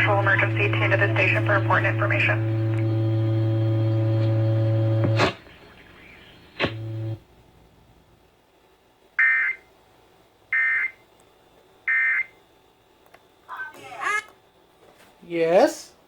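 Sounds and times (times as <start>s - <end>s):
low buzzing tone: 0.0s - 5.4s, 6.6s - 7.2s.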